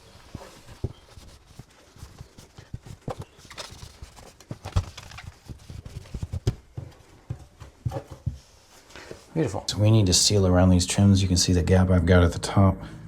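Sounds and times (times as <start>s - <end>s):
hand rubbing wall: 0.0s - 9.3s.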